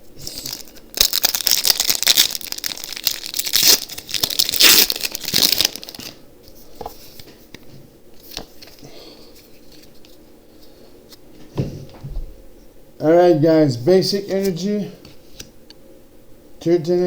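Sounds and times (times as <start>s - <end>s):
foil wrapper tearing and crinkling: 0.2s - 6.2s.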